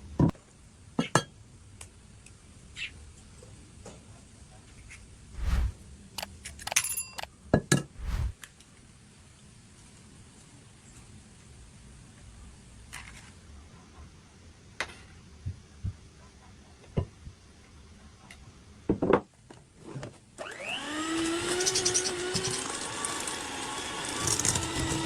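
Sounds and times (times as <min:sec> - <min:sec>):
kitchen appliance motor running: 0:20.5 - 0:25.0.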